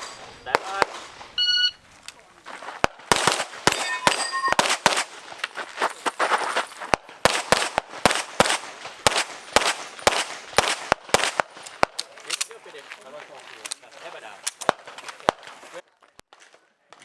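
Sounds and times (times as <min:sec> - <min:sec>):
rapid pistol fire: 0:00.0 - 0:01.2, 0:02.8 - 0:05.3, 0:07.2 - 0:12.0.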